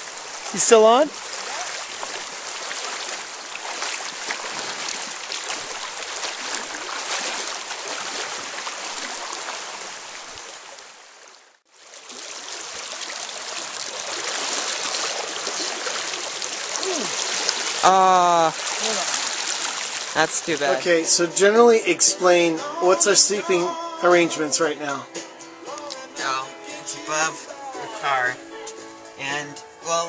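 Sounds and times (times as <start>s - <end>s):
fast river current rushing: 0.0s - 24.8s.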